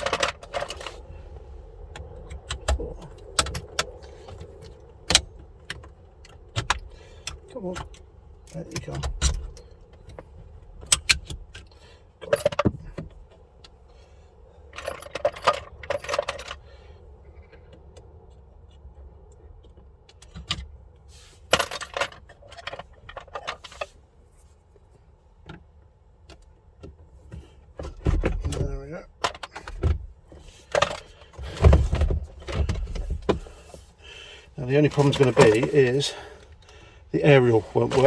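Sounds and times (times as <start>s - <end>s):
metallic and plastic clicks and rattles: 0.0s - 1.1s, 1.8s - 13.9s, 14.7s - 16.6s, 34.8s - 36.7s.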